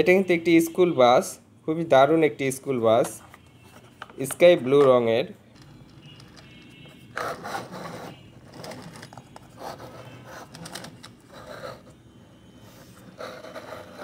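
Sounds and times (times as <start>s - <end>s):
toy scraping and rubbing: 5.6s - 14.0s.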